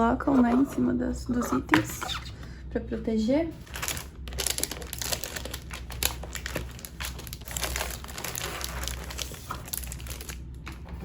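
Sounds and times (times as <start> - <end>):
plastic packaging crinkling: 3.6 - 10.9.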